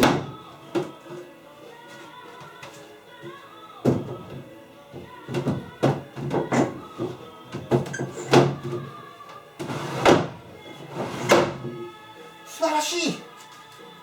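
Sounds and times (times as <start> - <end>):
wooden cupboard doors shutting: 0.0 - 1.2, 2.4 - 11.9
background music: 0.0 - 14.0.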